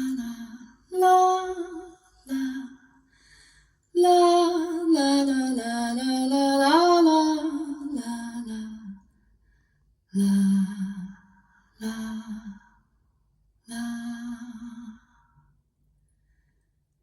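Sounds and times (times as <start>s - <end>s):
woman singing wordless melody: 0.0s - 2.9s, 3.9s - 9.0s.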